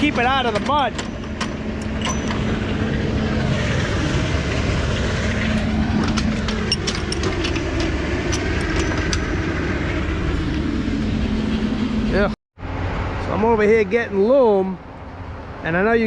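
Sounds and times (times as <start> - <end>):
sharp clicks and knocks: 0.0 - 2.6, 5.5 - 9.6
diesel truck engine running: 0.0 - 16.0.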